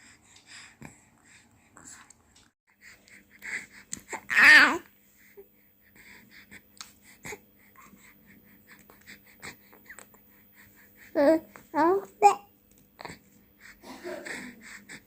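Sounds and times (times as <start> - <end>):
baby cooing: 4.1 - 4.8
baby breathy puffs: 5.1 - 11.2, 13.0 - 15.0.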